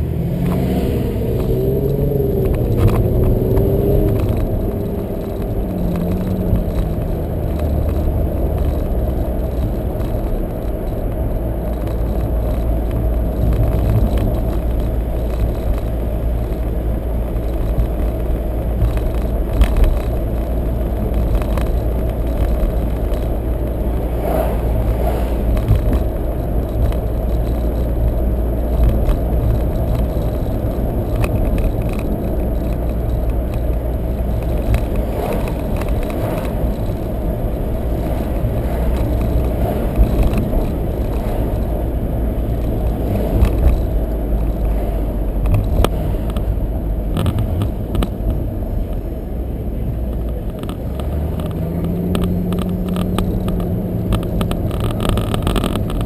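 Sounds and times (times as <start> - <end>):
car cabin rumble: 0.0 - 56.0.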